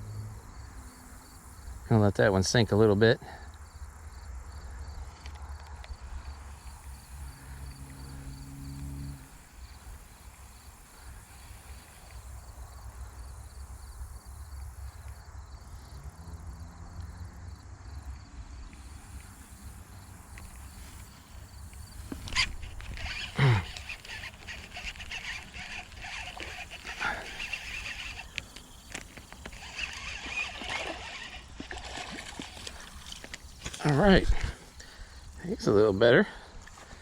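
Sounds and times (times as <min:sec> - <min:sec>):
faint low hums: 0:03.2 - 0:35.1
wind rumble on microphone: 0:34.0 - 0:34.6.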